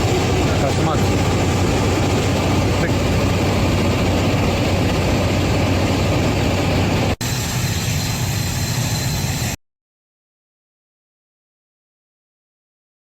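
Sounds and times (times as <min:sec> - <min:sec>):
jet airliner engine rushing: 0:00.0 - 0:09.6.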